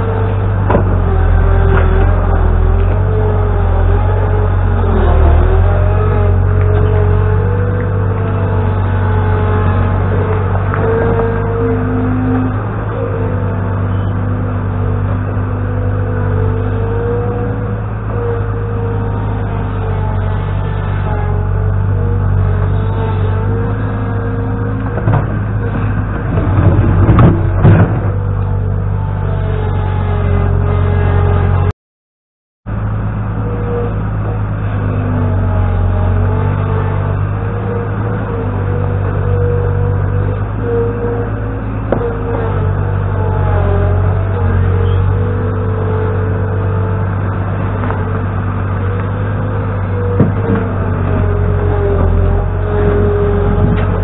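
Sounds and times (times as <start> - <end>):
diesel engine droning with whine: 0.0 - 31.8, 32.7 - 54.0.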